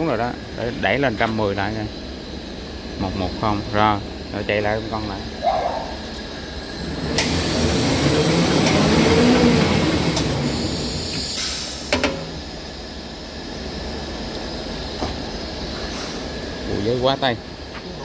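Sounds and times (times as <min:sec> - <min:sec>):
hissing bursts: 0:05.9 - 0:13.8
paper rewinding machine running: 0:06.8 - 0:11.2.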